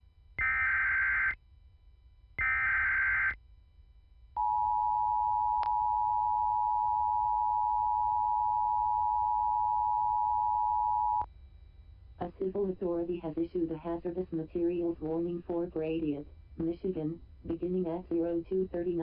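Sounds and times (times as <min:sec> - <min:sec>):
screechy digital data chirps: 0:00.4 - 0:01.4, 0:02.4 - 0:03.4
steady two-tone attention signal: 0:04.4 - 0:11.3.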